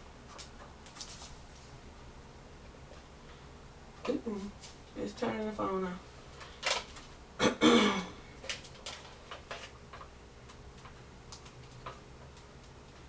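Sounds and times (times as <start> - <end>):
woman clearing her throat: 7.4 - 8.2.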